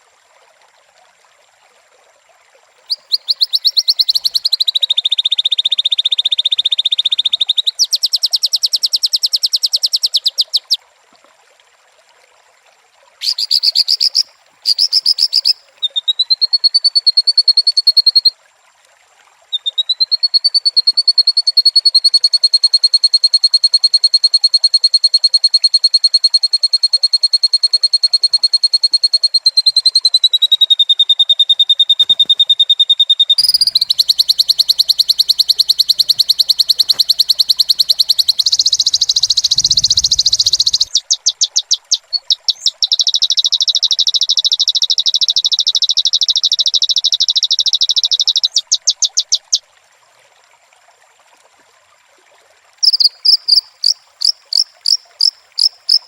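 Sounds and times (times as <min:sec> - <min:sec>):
high-pitched animal trills: 0:33.4 - 0:41.0.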